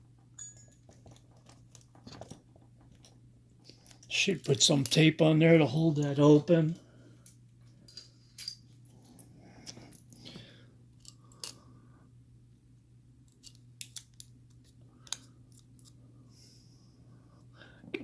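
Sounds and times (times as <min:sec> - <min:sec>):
steady low hum: 0:00.0 - 0:18.0
tape handling clicks and rustles: 0:13.3 - 0:16.0.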